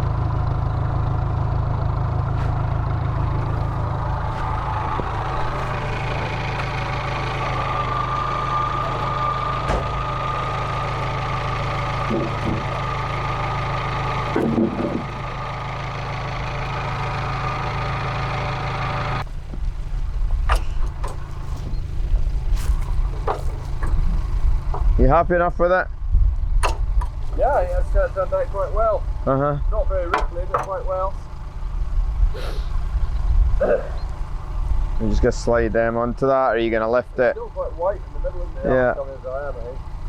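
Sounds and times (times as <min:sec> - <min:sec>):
sawmill engine drone: 0:00.0 - 0:40.0
sharp knocks: 0:08.8 - 0:10.3, 0:11.9 - 0:12.9, 0:14.3 - 0:15.2, 0:30.1 - 0:30.8.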